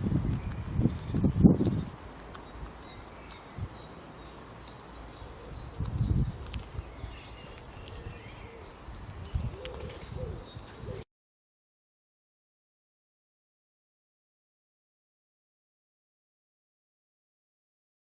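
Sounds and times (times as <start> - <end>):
faint birds chirping: 0.0 - 11.1.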